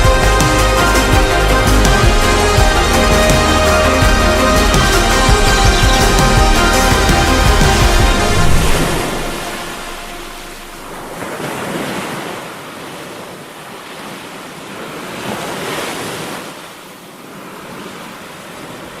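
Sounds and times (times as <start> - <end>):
ocean surf washing ashore: 0.0 - 19.0.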